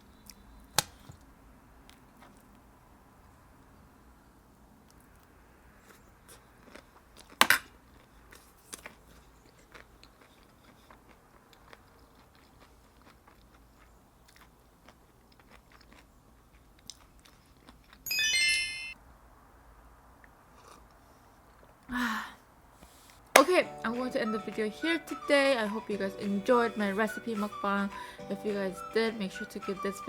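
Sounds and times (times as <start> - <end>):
person crunching and chewing food: 5.0 - 18.0, 20.4 - 21.8
high-pitched ringing chime: 18.1 - 19.0.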